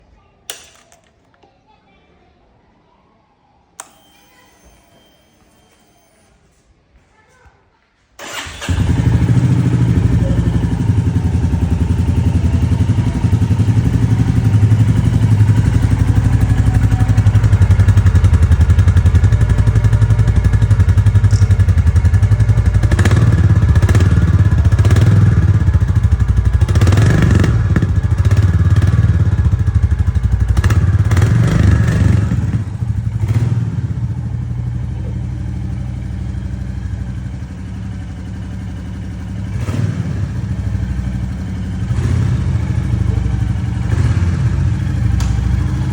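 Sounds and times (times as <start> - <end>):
engine revving: 8.2 - 34.5, 39.0 - 45.9
motorcycle engine idling: 8.2 - 45.9.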